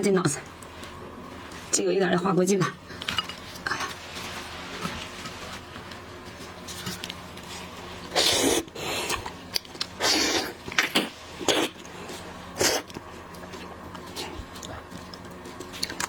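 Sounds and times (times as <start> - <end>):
person eating shrimp: 8.1 - 16.0.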